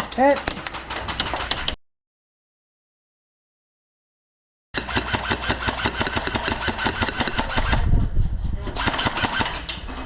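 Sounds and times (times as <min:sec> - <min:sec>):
airsoft rifle full-auto burst: 0:04.8 - 0:07.8, 0:08.8 - 0:09.6.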